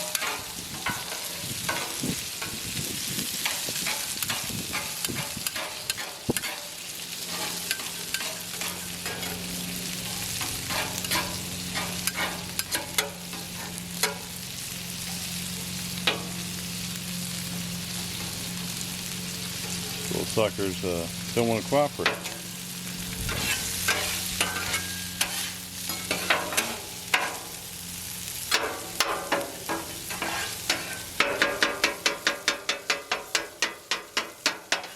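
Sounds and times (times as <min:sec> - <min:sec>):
metal spatula clicking and scraping: 0:00.0 - 0:02.6, 0:03.3 - 0:09.4, 0:10.1 - 0:14.2, 0:23.3 - 0:27.3, 0:28.5 - 0:34.9
hot dogs sizzling on griddle: 0:00.0 - 0:34.9.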